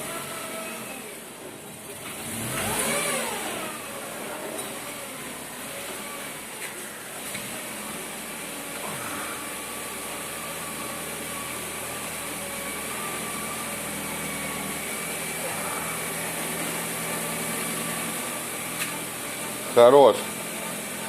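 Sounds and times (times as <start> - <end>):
car engine idling: 0.0 - 21.0.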